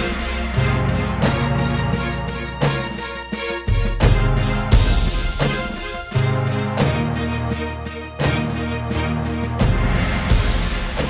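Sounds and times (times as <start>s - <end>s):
cymbal crash: 0.0s - 2.4s
background music with steady beat: 0.0s - 11.0s.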